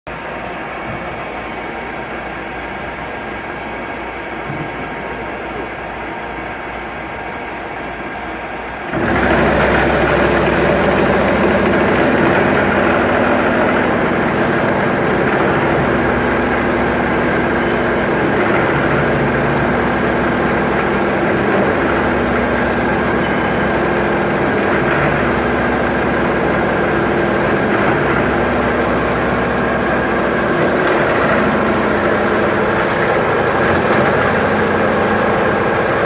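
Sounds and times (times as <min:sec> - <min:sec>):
milling machine running: 0:08.7 - 0:36.0.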